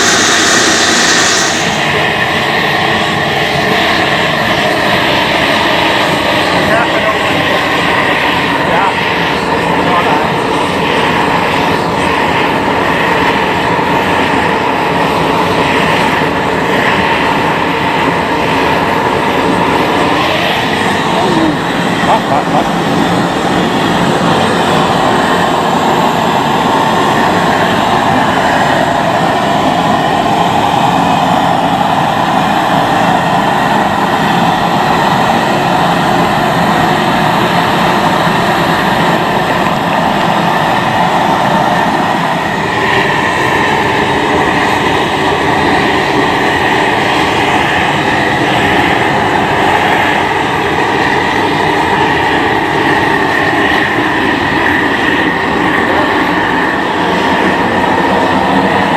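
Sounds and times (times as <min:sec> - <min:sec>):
higher hiss: 0:00.0 - 0:02.0
gas torches roaring: 0:00.0 - 0:58.9.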